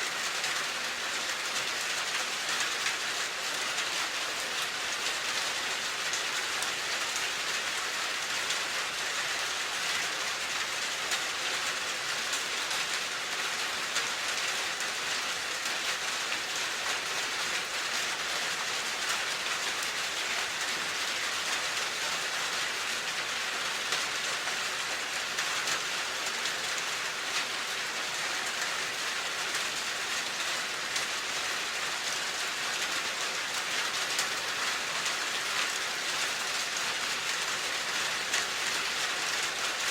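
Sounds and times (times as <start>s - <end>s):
rain on a hard surface: 0.0s - 39.9s.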